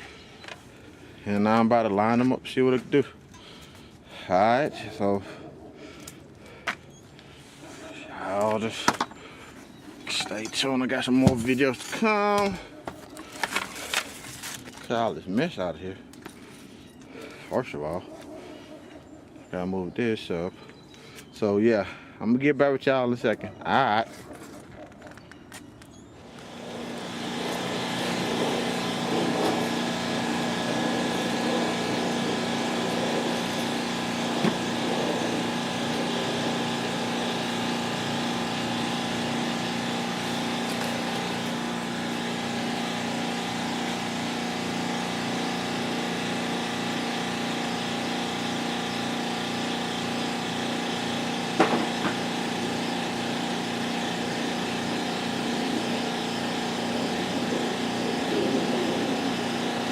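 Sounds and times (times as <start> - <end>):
small engine running: 26.2 - 59.9.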